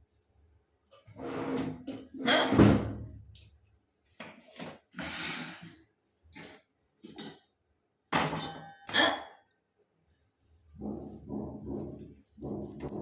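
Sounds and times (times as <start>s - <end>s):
person hiccuping: 8.9s - 9.4s.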